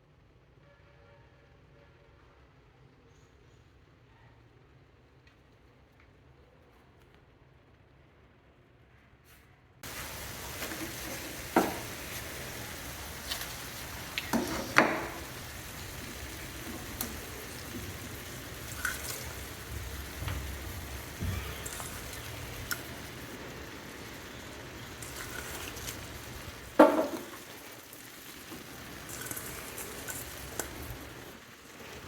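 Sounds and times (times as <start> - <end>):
oil sizzling in a pan: 9.8 - 32.0.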